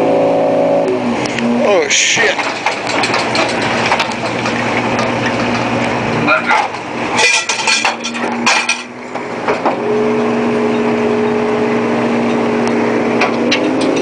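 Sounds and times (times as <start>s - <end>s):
boat engine running: 0.0s - 14.0s
metal clanking and banging: 1.9s - 9.8s, 13.2s - 14.0s.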